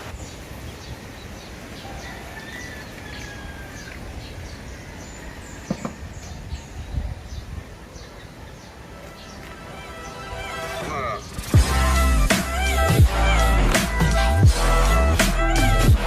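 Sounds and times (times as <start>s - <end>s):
birds chirping: 0.0s - 16.0s
knock: 5.7s - 6.0s.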